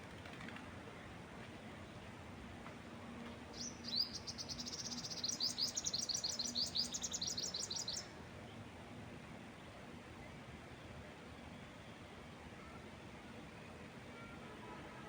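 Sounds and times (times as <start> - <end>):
soft wind: 0.0 - 15.0
songbird singing: 3.5 - 8.2.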